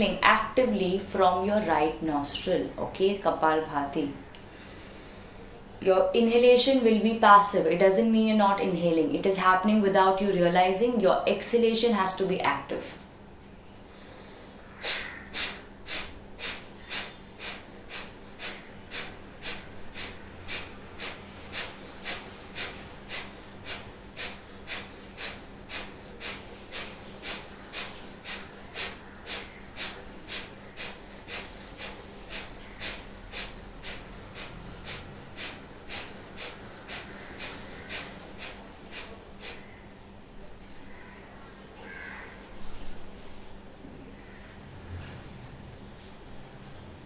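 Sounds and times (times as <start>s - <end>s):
forceful nostril exhalations: 14.8s - 39.7s.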